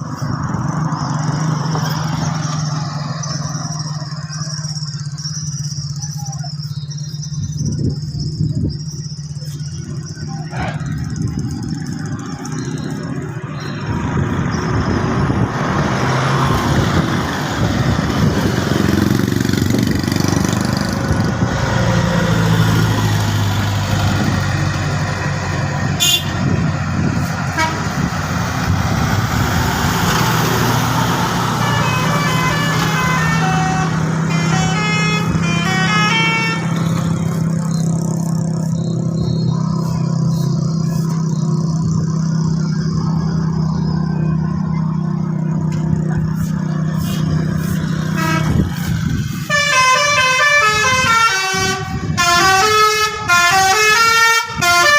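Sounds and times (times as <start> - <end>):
bus diesel engine running: 0.0 - 54.9
musical bus air horn: 26.0 - 26.5, 27.5 - 28.1, 31.6 - 37.0, 48.0 - 54.9.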